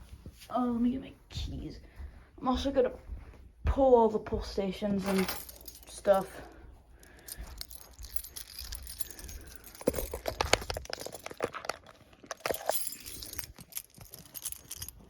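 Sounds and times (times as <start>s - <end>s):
keys jangling and clinking: 5.0s - 15.0s.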